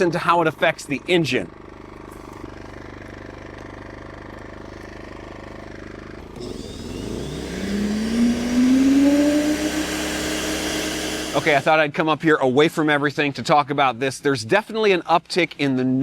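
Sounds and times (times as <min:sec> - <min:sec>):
generator running: 0:01.5 - 0:11.7
electric wood chipper whine: 0:02.5 - 0:11.7.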